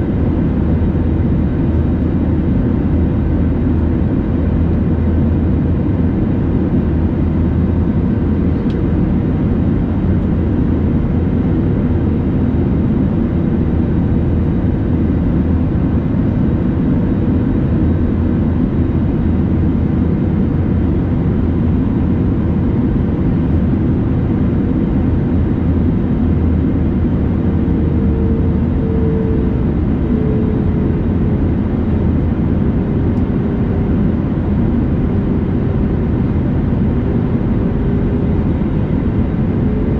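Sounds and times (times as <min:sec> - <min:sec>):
airplane cabin rumble: 0:00.0 - 0:39.9
faint tone: 0:27.6 - 0:31.2.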